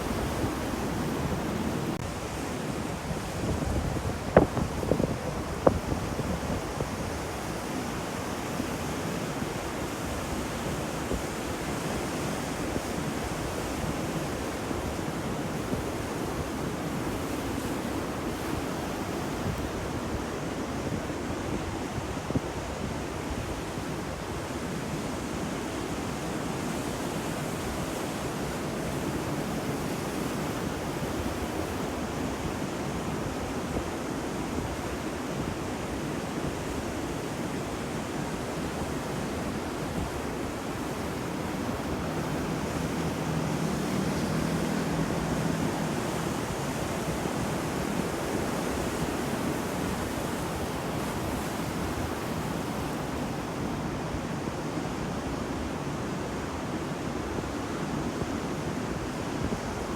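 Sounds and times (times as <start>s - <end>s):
ocean surf: 0.0s - 59.9s.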